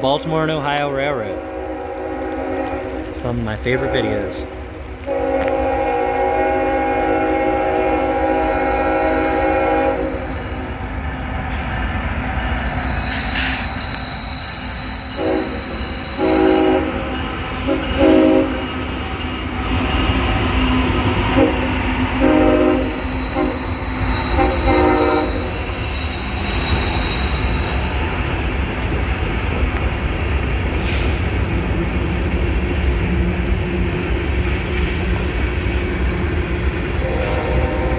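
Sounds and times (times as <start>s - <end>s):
freight train rumbling past: 0.0s - 37.9s
locomotive air horn blasts: 1.2s - 10.5s, 15.2s - 18.7s, 21.3s - 23.6s, 24.4s - 25.6s, 37.0s - 37.9s
high wheel squeal: 7.9s - 28.4s.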